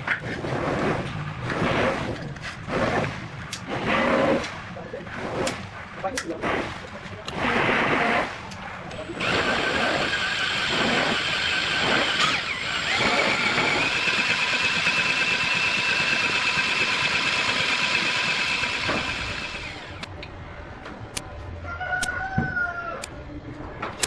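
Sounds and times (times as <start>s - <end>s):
small power tool motor whine: 9.1s - 20.1s.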